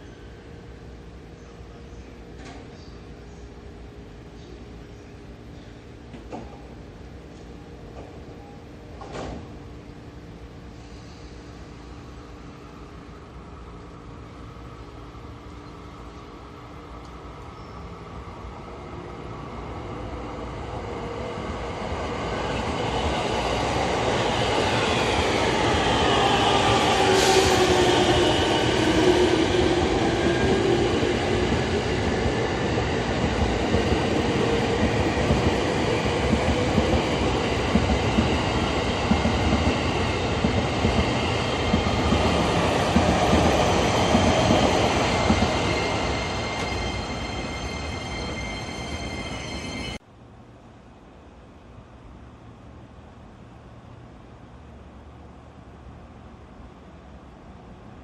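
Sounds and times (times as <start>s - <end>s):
train wheels rumbling on rail: 20.7s - 50.0s.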